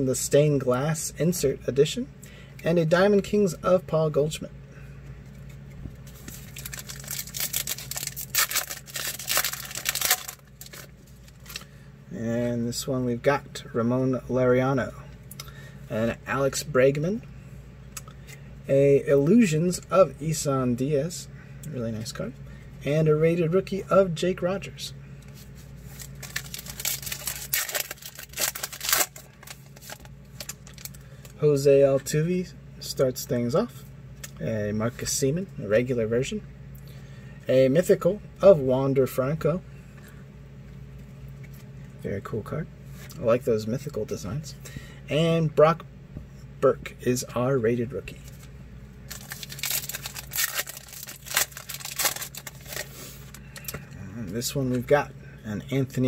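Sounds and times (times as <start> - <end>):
foil wrapper tearing and crinkling: 6.1 - 11.7, 25.9 - 31.0, 49.1 - 53.7.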